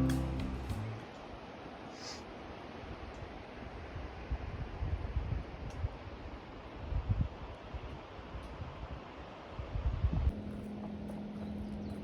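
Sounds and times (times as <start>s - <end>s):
wind buffeting microphone: 3.8s - 12.0s.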